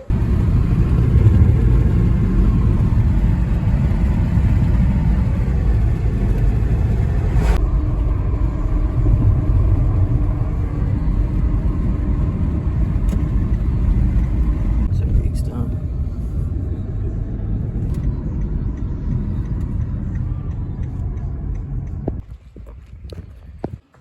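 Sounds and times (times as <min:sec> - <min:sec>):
road noise inside car: 0:00.0 - 0:24.0.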